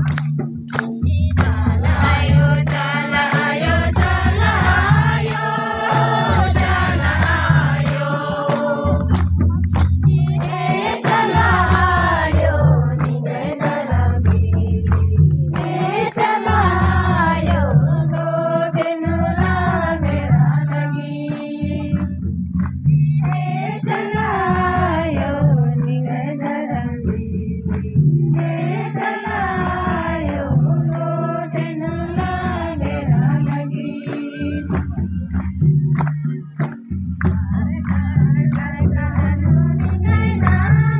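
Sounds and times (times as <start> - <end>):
drum beating low pattern: 0.0 - 31.3
group singing devotional song: 0.0 - 40.9
shaker jingling: 0.0 - 40.9.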